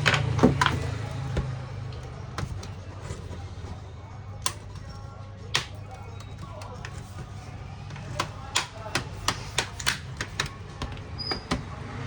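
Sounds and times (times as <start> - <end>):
plastic case clicks and knocks: 4.5 - 7.4.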